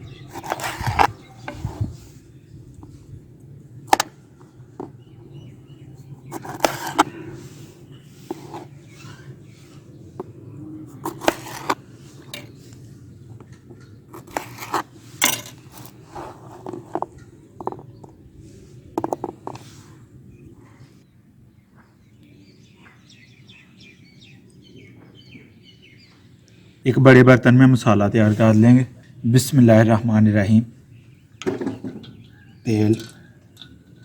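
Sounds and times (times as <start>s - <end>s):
steady low hum: 0.0s - 21.6s
knife scrapes: 0.3s - 2.1s, 6.3s - 9.8s, 11.0s - 12.6s, 14.2s - 17.1s.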